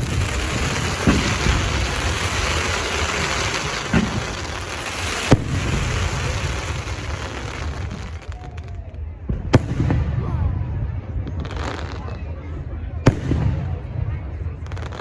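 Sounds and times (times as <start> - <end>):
firework bang: 0.0 - 8.5, 9.2 - 10.5
fireworks crackling: 0.0 - 15.0.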